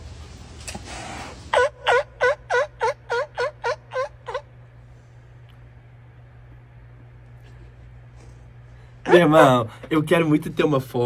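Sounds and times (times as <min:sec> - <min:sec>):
seal barking: 0:01.5 - 0:04.5.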